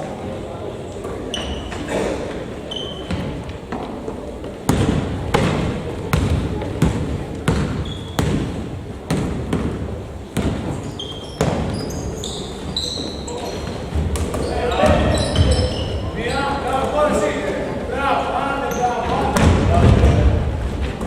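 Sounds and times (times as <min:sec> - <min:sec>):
shoe squeaks: 0:01.2 - 0:02.0, 0:02.6 - 0:03.4, 0:07.7 - 0:08.3, 0:10.8 - 0:16.6
basketball bouncing on court: 0:04.7 - 0:11.9, 0:14.0 - 0:15.8.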